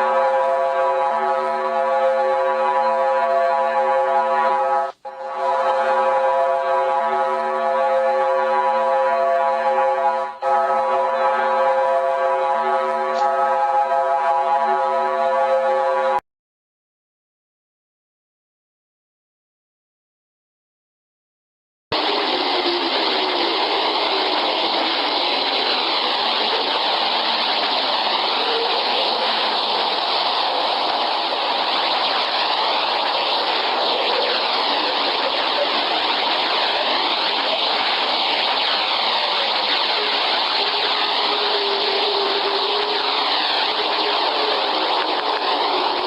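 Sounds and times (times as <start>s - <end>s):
dense rushing hiss with whooshes: 22.0s - 46.0s.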